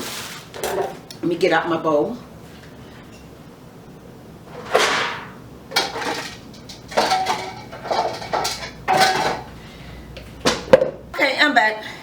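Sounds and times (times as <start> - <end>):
dishes clattering: 4.5 - 9.6.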